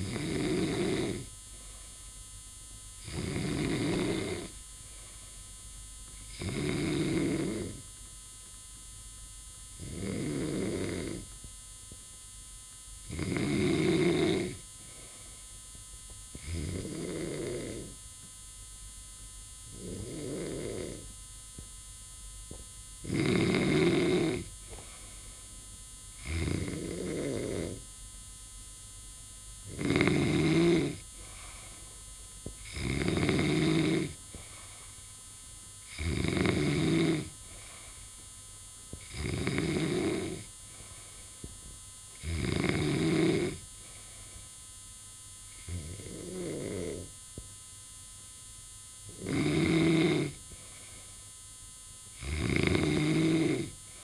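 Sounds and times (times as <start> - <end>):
snoring: 0.0 - 1.4, 3.0 - 5.2, 6.2 - 7.9, 9.8 - 11.3, 13.0 - 15.4, 16.3 - 18.0, 19.7 - 21.1, 23.0 - 25.4, 26.1 - 27.9, 29.6 - 31.9, 32.6 - 35.0, 35.8 - 38.1, 38.9 - 41.4, 42.1 - 44.4, 45.5 - 47.2, 49.0 - 51.2, 52.1 - 54.0
faint steady hum: 0.0 - 54.0.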